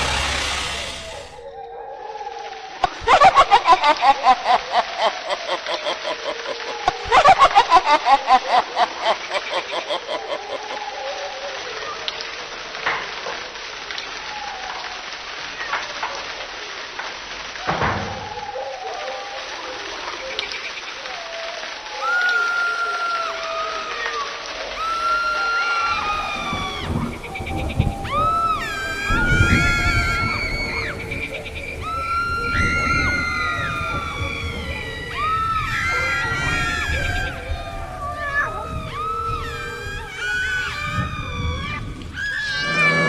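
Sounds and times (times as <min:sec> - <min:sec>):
hissing ambience: 0:00.0 - 0:11.8, 0:19.6 - 0:41.0
cackling laughter: 0:02.8 - 0:11.6, 0:35.6 - 0:41.2.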